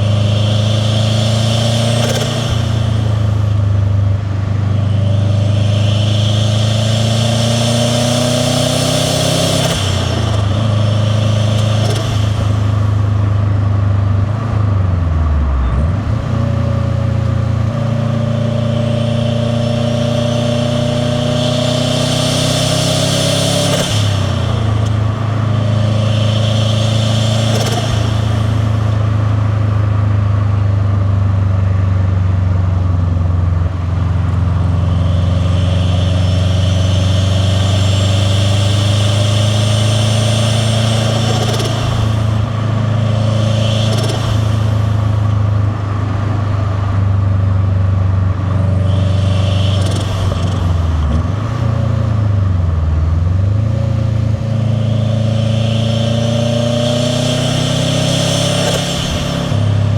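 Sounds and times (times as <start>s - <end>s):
car engine rumbling: 0.0s - 59.9s
sharp air burst: 21.8s - 29.6s, 34.7s - 47.0s, 48.7s - 52.1s.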